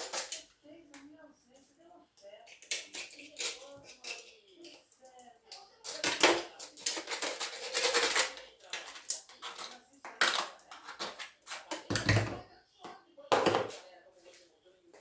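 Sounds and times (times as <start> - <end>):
hard objects clattering and knocking: 5.8 - 12.4, 13.3 - 13.8.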